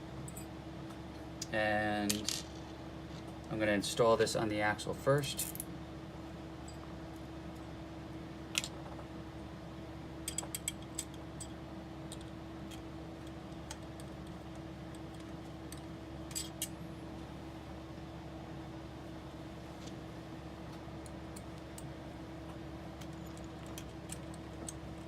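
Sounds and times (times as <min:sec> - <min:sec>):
steady hum: 0:00.0 - 0:25.0.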